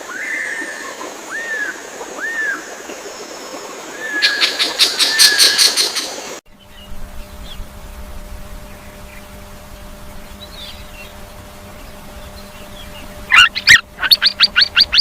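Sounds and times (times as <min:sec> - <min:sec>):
faint outdoor hiss: 0:00.0 - 0:15.0
bird chattering: 0:12.3 - 0:15.0.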